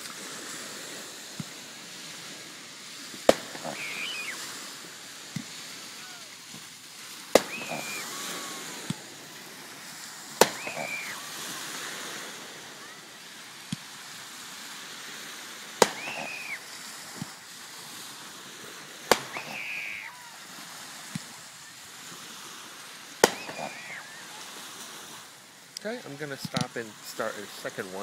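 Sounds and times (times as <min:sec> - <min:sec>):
loud firework bangs: 0:00.0 - 0:25.4
surf: 0:00.0 - 0:28.0
faint firework pops: 0:01.3 - 0:01.6, 0:03.0 - 0:04.7, 0:05.3 - 0:12.4, 0:15.7 - 0:17.5, 0:18.6 - 0:21.4, 0:23.2 - 0:25.0, 0:25.8 - 0:26.8.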